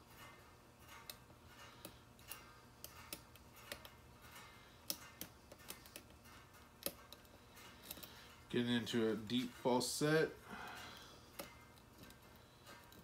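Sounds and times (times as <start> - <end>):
lock pick clicking pins: 0.8 - 8.3, 10.7 - 13.0.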